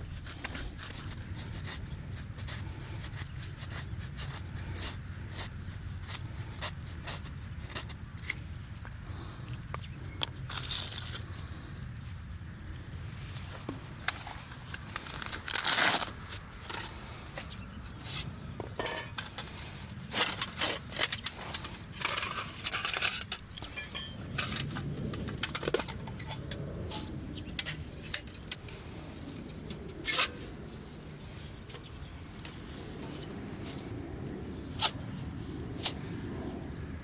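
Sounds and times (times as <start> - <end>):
low steady background noise: 0.0 - 37.0
utensils clinking on cookware: 18.7 - 19.4, 22.0 - 24.8.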